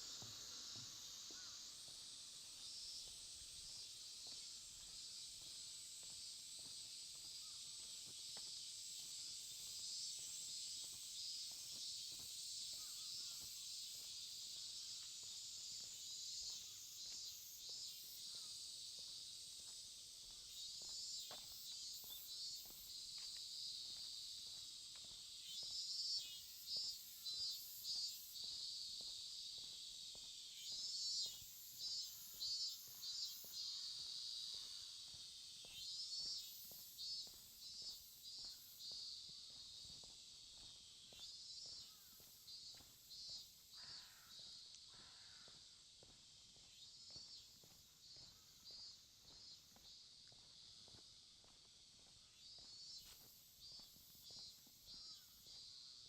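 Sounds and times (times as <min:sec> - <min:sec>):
insect pulsed calls: 0:00.0 - 0:05.4, 0:08.8 - 0:19.4, 0:25.4 - 0:39.9
faint footsteps: 0:00.0 - 0:25.9, 0:33.5 - 0:55.7
insects chirring: 0:00.0 - 0:56.0.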